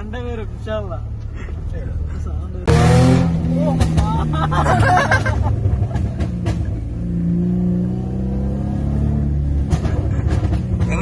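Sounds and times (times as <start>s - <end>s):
car engine revving: 2.6s - 11.0s
exhaust pops: 3.6s - 6.9s, 9.5s - 11.0s.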